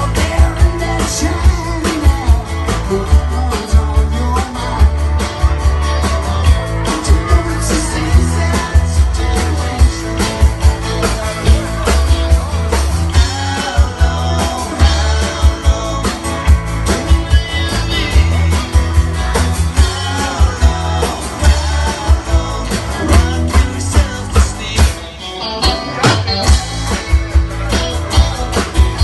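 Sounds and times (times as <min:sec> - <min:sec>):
drum beat: 0:00.0 - 0:25.0, 0:26.0 - 0:29.0
bass: 0:00.0 - 0:29.0
electric guitar: 0:00.0 - 0:29.0
person singing: 0:00.0 - 0:29.0.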